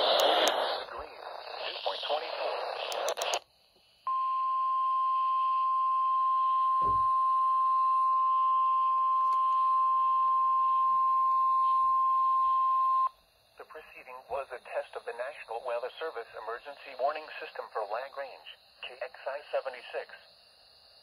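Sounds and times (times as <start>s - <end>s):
steady alarm tone: 4.1s - 13.1s
low thump: 6.8s - 7.1s.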